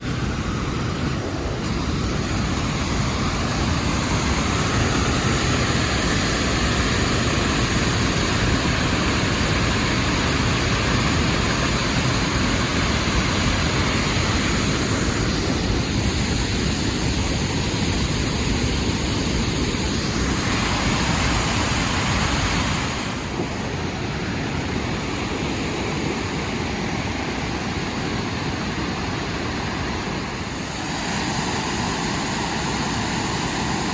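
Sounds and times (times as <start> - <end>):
waterfall roaring: 0.0 - 33.9.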